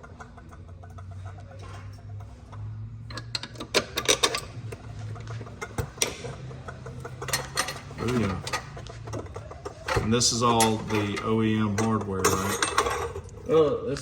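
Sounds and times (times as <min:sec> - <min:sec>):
metal hardware clinking: 0:03.1 - 0:04.8, 0:07.2 - 0:13.3.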